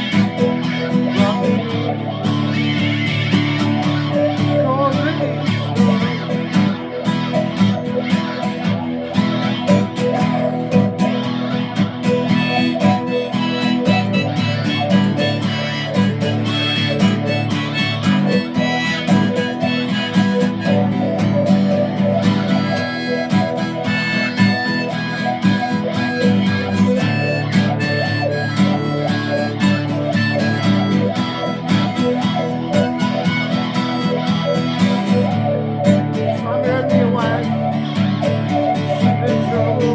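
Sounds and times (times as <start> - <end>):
guitar playing chords: 0.0 - 39.9
reedy lead melody: 0.0 - 39.9.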